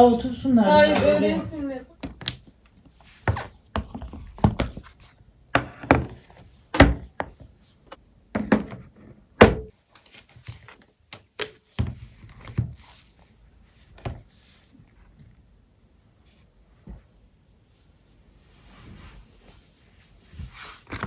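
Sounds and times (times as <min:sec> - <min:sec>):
knocks and thuds on hard surface: 0:08.3 - 0:09.7.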